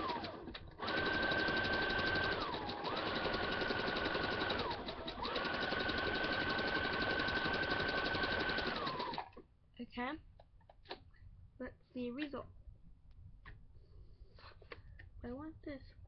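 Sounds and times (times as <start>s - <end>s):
sewing machine clicks: 0.0s - 9.4s
sewing machine stitching: 0.0s - 9.4s.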